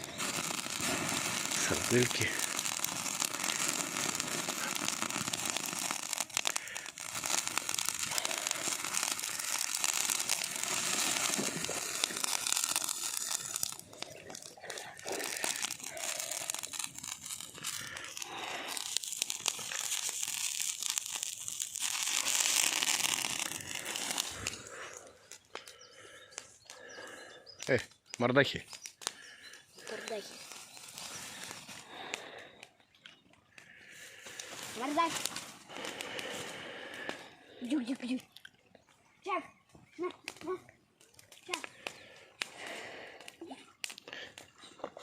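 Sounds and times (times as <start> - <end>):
plastic packaging crinkling and tearing: 0.0 - 26.1, 28.6 - 32.6, 33.8 - 37.2.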